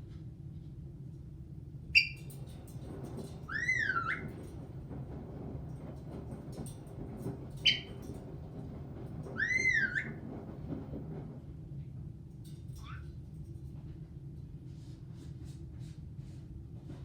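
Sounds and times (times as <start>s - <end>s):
parrot whistling: 2.0s - 2.2s, 3.5s - 4.3s, 9.4s - 10.2s
parrot chirp: 2.0s - 2.3s, 3.5s - 4.3s, 7.6s - 7.9s, 9.4s - 10.2s.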